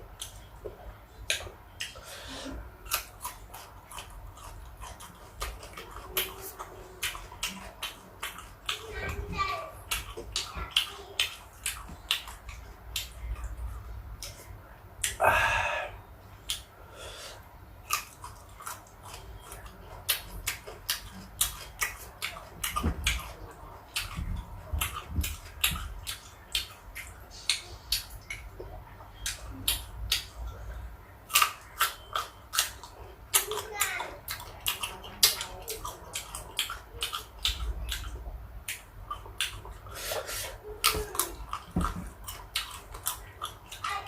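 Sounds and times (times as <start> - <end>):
crunchy fruit chewing: 0.1 - 15.8, 16.4 - 44.0
breathy burst: 15.2 - 16.0.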